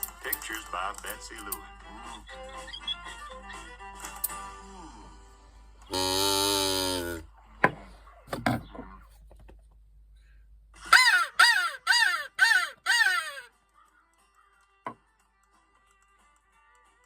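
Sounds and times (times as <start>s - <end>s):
crow cawing: 10.9s - 13.5s.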